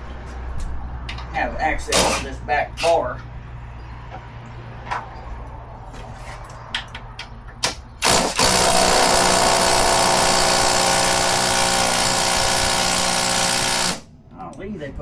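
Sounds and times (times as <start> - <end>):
handheld power tool running: 1.9 - 2.4, 8.0 - 14.1.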